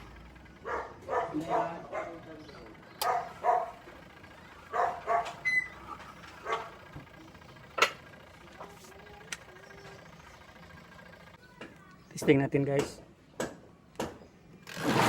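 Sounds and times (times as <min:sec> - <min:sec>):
dog barking: 0:00.6 - 0:02.3, 0:03.0 - 0:03.8, 0:04.7 - 0:05.4, 0:06.4 - 0:06.8.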